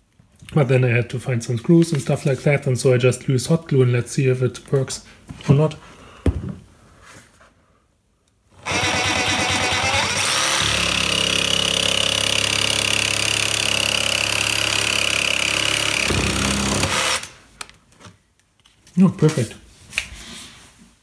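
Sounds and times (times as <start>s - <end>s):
power saw cutting steel: 8.6s - 17.3s.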